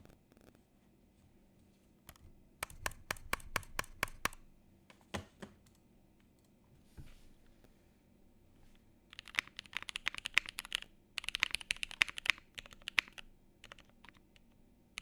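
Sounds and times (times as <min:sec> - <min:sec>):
mechanical keyboard keystrokes: 0:02.1 - 0:04.4, 0:09.1 - 0:15.0.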